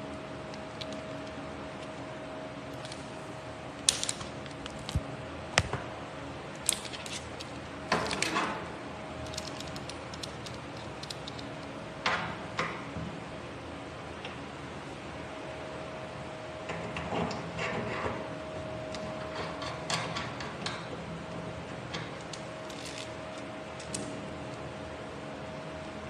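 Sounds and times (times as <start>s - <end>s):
small metal parts clicking and rattling: 0.5s - 1.9s, 3.9s - 4.9s, 6.6s - 8.5s, 9.2s - 11.7s, 21.9s - 24.1s.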